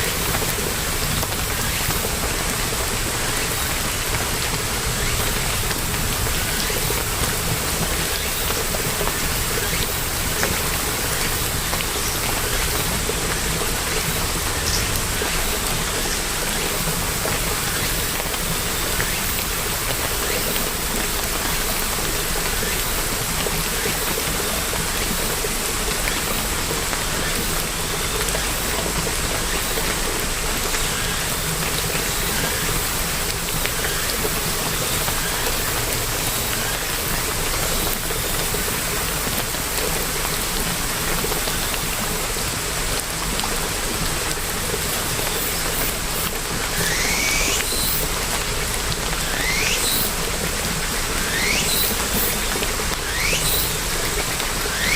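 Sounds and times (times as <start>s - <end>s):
rain falling: 0.0s - 54.9s.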